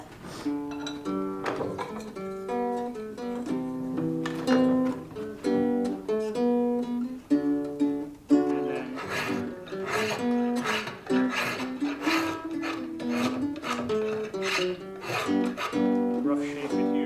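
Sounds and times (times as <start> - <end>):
plucked string instrument melody: 0.3 - 17.0.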